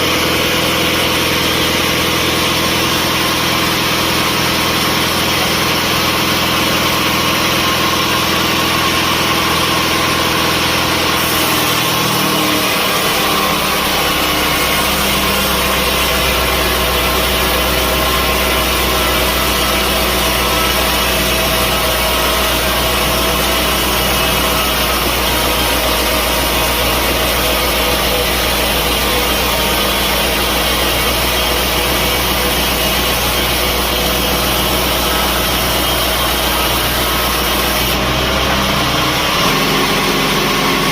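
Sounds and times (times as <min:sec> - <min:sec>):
sawing noise: 0:00.0 - 0:40.9
sawmill motor hum: 0:00.0 - 0:40.9.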